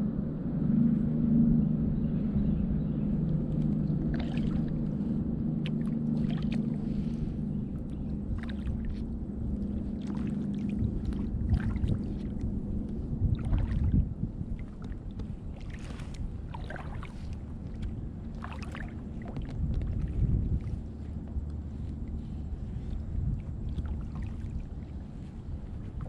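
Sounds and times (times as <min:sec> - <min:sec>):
low rumble: 0:00.0 - 0:26.0
steady low hum: 0:00.0 - 0:26.0
paddle splashing in water: 0:03.8 - 0:26.0.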